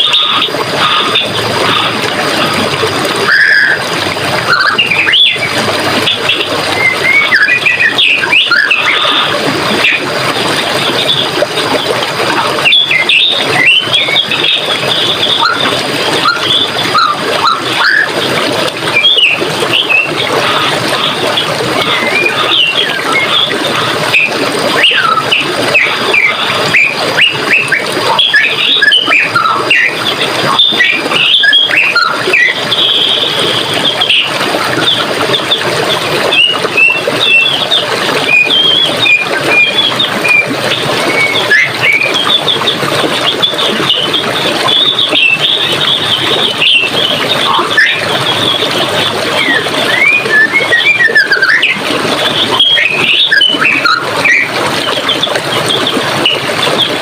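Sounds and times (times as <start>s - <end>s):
running water flowing: 0.0s - 57.0s.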